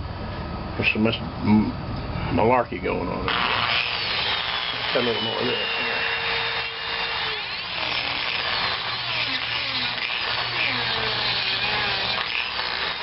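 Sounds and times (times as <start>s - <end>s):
rotary tool grinding plastic: 3.3s - 13.0s.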